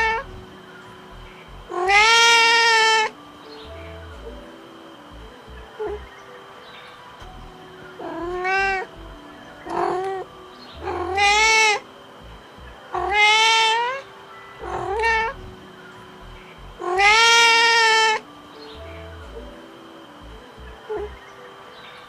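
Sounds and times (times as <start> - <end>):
cat meowing: 0.0 - 0.3, 1.7 - 3.1, 8.0 - 8.9, 9.7 - 10.2, 10.8 - 11.8, 12.9 - 14.0, 14.6 - 15.4, 16.8 - 18.2.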